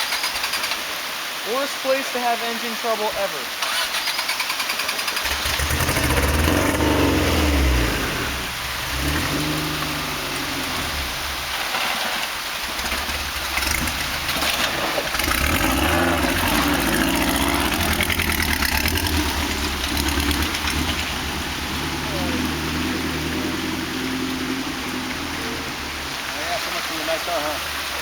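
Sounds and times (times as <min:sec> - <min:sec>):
vehicle engine revving: 0:03.6 - 0:28.0.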